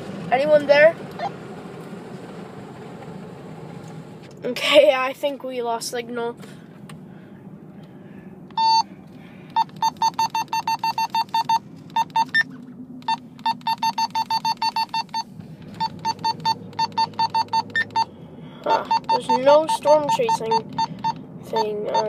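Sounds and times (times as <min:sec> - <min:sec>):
low steady hum: 0:00.0 - 0:22.0
radio keypad beeps: 0:08.5 - 0:08.9, 0:09.5 - 0:22.0.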